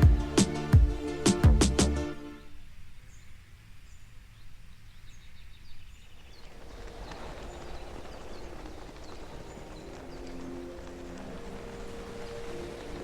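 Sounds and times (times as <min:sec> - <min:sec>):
small birds chirping: 0:02.5 - 0:13.0
rustling noise: 0:06.2 - 0:13.0.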